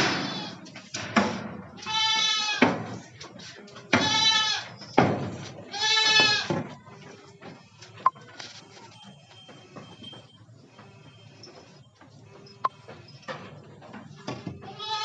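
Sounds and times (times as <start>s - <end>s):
goats bleating: 1.8s - 2.8s, 3.9s - 4.8s, 5.6s - 6.6s, 14.5s - 15.0s.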